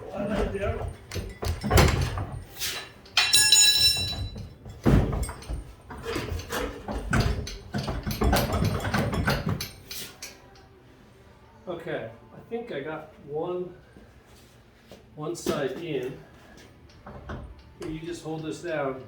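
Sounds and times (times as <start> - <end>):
metal clunks and knocks: 0.1 - 2.6, 3.2 - 9.8, 16.9 - 18.2.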